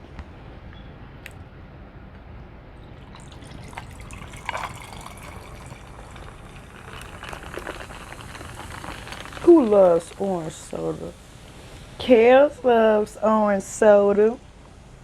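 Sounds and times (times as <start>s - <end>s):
soda fizzing as poured: 2.8s - 11.2s.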